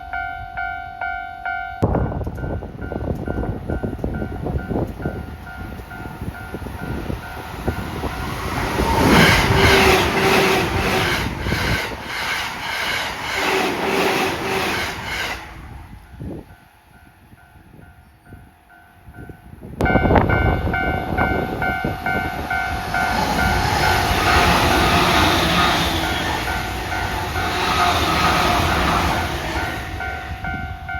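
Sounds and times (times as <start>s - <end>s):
crossing warning bell ringing: 0.0s - 11.8s, 16.0s - 30.9s
train rushing past: 1.8s - 17.8s, 19.7s - 30.9s
train wheels clattering: 2.1s - 15.6s, 21.3s - 30.8s.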